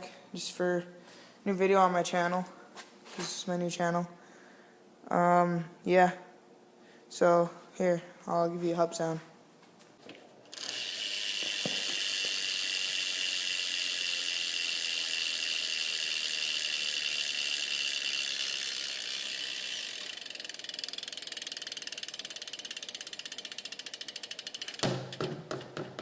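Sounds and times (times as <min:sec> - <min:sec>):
bike hub freewheeling clicks: 0:10.5 - 0:25.2.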